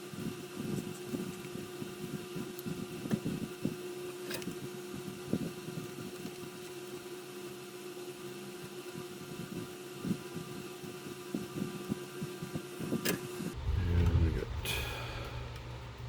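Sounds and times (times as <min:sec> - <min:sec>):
steady low hum: 0:13.5 - 0:16.0.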